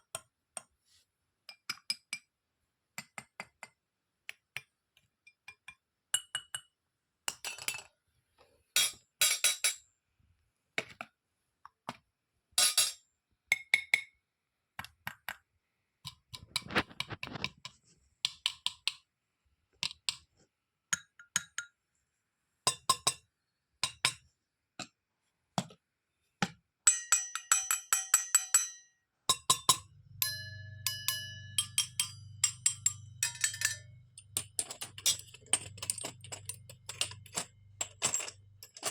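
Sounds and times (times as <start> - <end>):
toy kitchen pieces clinking: 16.4 - 17.4, 26.9 - 38.9
low hum with held tone: 29.6 - 38.9.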